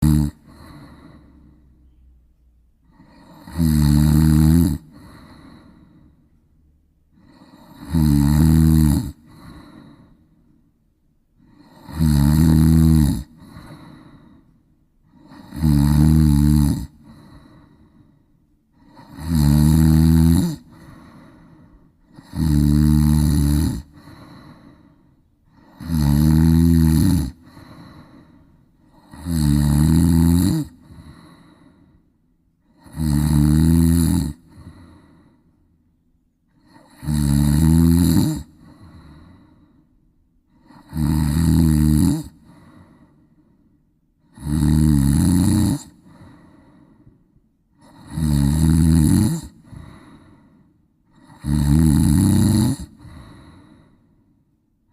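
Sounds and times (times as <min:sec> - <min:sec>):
cat snoring: 0:00.0 - 0:02.0, 0:02.8 - 0:06.2, 0:07.2 - 0:10.2, 0:11.4 - 0:14.4, 0:15.1 - 0:18.1, 0:18.7 - 0:32.0, 0:32.6 - 0:35.4, 0:36.5 - 0:39.7, 0:40.5 - 0:43.0, 0:44.2 - 0:47.0, 0:47.8 - 0:54.0
soft breath: 0:00.4 - 0:03.4, 0:04.8 - 0:07.8, 0:09.2 - 0:11.8, 0:13.3 - 0:15.5, 0:16.9 - 0:19.2, 0:20.6 - 0:22.2, 0:23.8 - 0:25.8, 0:27.3 - 0:29.2, 0:30.7 - 0:32.8, 0:34.4 - 0:35.8, 0:38.4 - 0:40.9, 0:42.3 - 0:43.8, 0:45.9 - 0:48.1, 0:49.5 - 0:51.4, 0:52.9 - 0:54.6.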